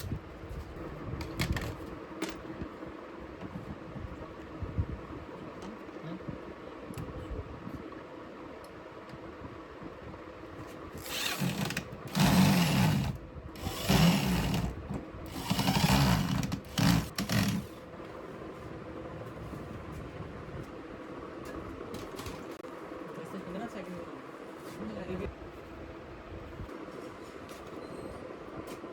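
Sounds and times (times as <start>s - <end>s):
low workshop hum: 0.0s - 28.9s
small power tool motor: 11.0s - 17.7s.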